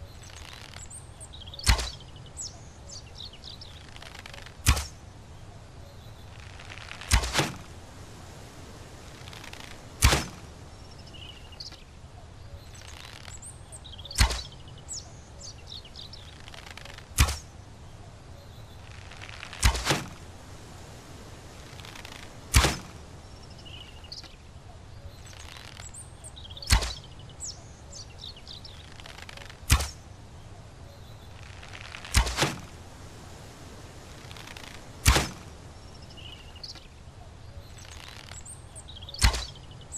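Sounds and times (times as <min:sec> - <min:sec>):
faint bird chirps: 0:00.0 - 0:07.6, 0:08.4 - 0:32.4, 0:33.2 - 0:39.9
arrow shots thwacking: 0:01.6 - 0:02.1, 0:04.4 - 0:05.0, 0:07.0 - 0:07.7, 0:10.0 - 0:10.5, 0:14.1 - 0:14.6, 0:17.0 - 0:17.5, 0:19.5 - 0:20.2, 0:22.4 - 0:23.0, 0:26.6 - 0:27.2, 0:29.5 - 0:30.0, 0:32.0 - 0:32.8, 0:34.4 - 0:35.5, 0:39.1 - 0:39.7.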